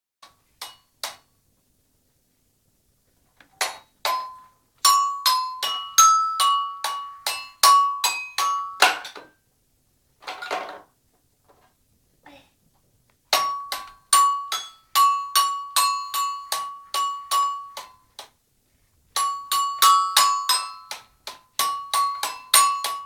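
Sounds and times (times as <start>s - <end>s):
toy xylophone notes: 4.0s - 9.0s, 13.4s - 18.0s, 19.2s - 23.0s.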